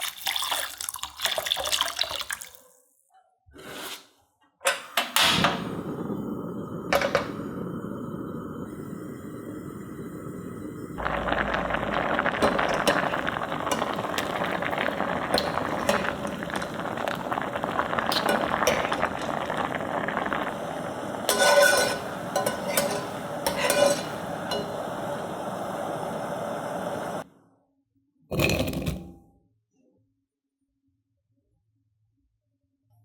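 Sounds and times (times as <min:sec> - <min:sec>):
potatoes crackling in pan: 0:11.0 - 0:25.0
utensil stirring and clinking: 0:11.0 - 0:26.0.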